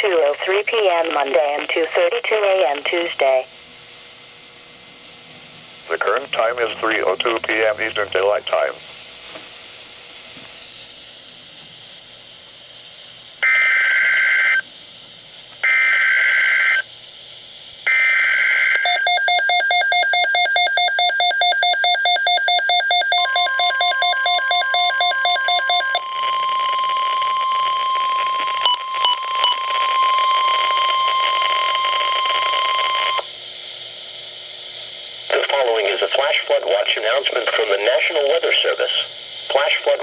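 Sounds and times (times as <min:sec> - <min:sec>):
faint radio hiss: 0:00.0 - 0:03.6, 0:05.7 - 0:10.6, 0:33.6 - 0:40.0
steady warning alarm tone: 0:05.8 - 0:08.8, 0:13.4 - 0:14.7, 0:15.6 - 0:16.9, 0:17.9 - 0:33.3
harsh rapidly pulsing alarm: 0:05.8 - 0:08.9, 0:13.4 - 0:14.7, 0:15.6 - 0:16.9, 0:17.8 - 0:33.3.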